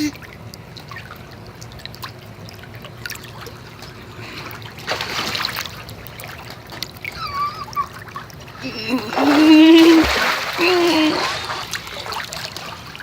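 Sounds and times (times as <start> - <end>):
water trickling and lapping: 0.0 - 13.0
surge of water: 2.8 - 13.0.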